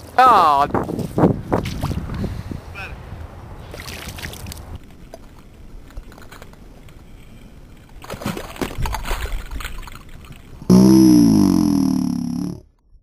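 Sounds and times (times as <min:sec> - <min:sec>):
water sloshing and splashing: 0:03.6 - 0:05.4, 0:07.9 - 0:10.6.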